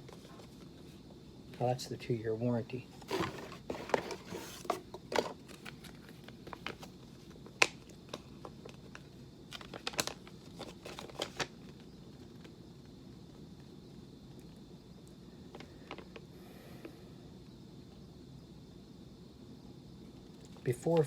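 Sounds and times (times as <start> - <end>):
paper rustling and crinkling: 3.0 - 12.5.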